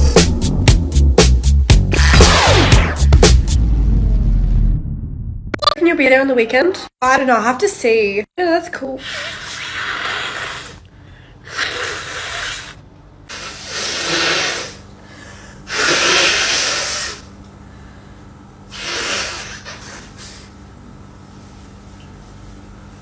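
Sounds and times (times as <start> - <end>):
person sneezing: 11.5 - 14.8, 15.7 - 17.3, 18.7 - 20.5.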